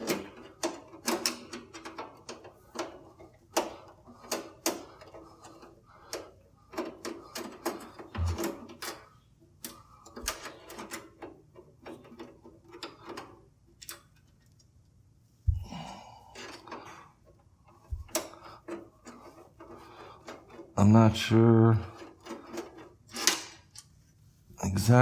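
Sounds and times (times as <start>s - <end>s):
light clicks taps and rattles: 0.0s - 14.8s.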